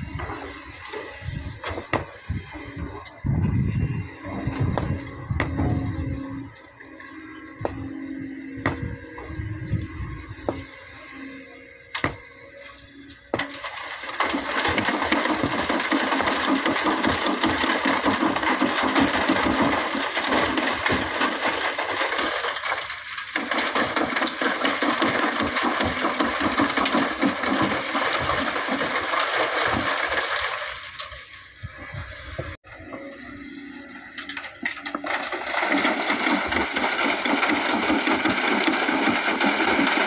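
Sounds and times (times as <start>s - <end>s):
sand and stones pouring into truck: 13.4s - 32.6s, 34.4s - 40.0s.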